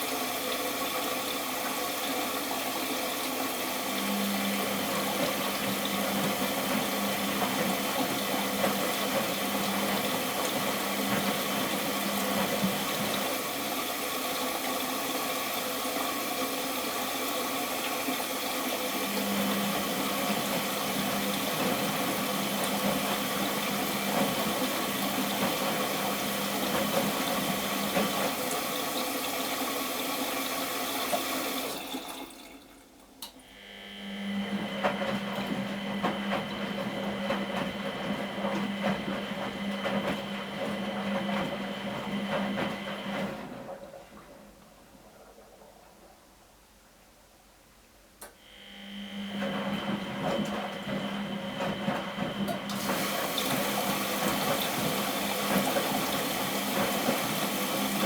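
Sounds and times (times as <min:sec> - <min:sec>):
washing machine running: 0:00.0 - 0:46.2, 0:48.2 - 0:58.0
water rushing in: 0:52.7 - 0:58.0.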